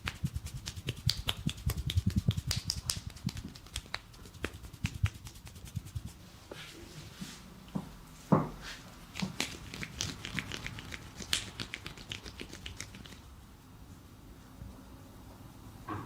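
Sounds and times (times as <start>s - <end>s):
hands tapping during massage: 0.0s - 6.2s, 9.2s - 13.2s.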